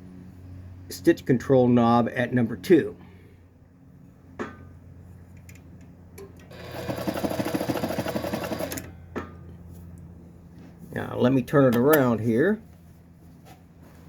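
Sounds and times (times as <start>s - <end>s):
sewing machine needle clatter: 6.2s - 8.9s.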